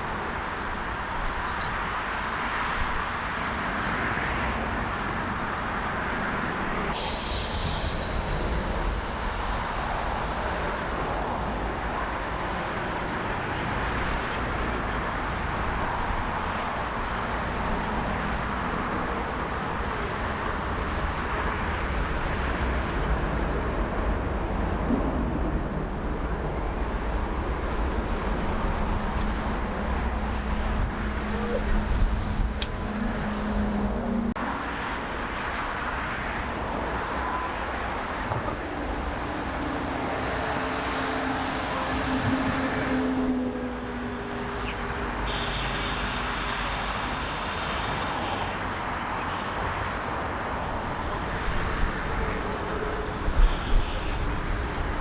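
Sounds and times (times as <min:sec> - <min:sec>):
gusty wind buffeting microphone: 0:00.0 - 0:45.2, 0:46.2 - 0:55.0
distant jet airliners rumbling: 0:00.0 - 0:55.0.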